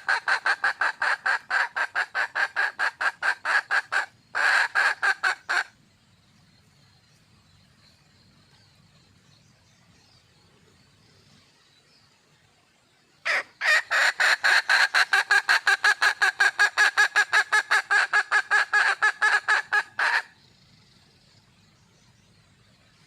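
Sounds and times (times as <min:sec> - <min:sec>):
hen clucking: 0:00.0 - 0:05.7, 0:13.3 - 0:20.3.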